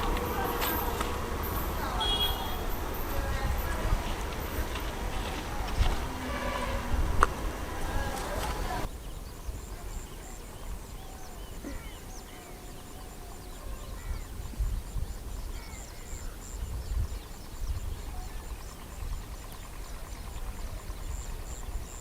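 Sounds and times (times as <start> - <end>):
birds chirping: 0.0 - 22.0
low rumble: 2.6 - 9.7.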